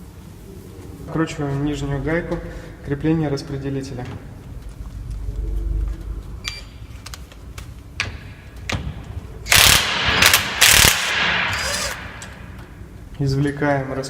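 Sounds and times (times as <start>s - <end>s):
ratchet wrench ratcheting: 9.5s - 12.4s.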